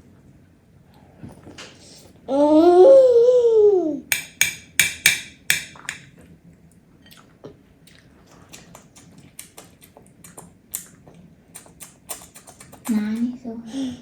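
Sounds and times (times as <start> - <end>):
utensil clinking against dish: 4.1 - 6.1
eating sounds: 7.0 - 14.0.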